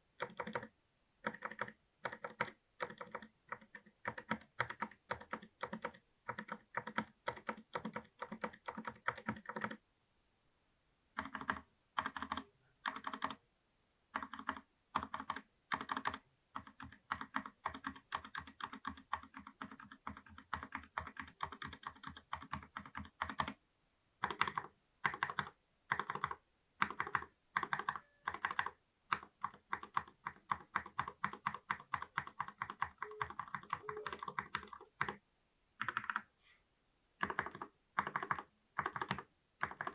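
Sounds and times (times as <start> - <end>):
mechanical keyboard typing: 0.2 - 9.8, 11.2 - 13.4, 14.2 - 23.6, 24.2 - 35.2, 35.8 - 36.3, 37.2 - 39.9.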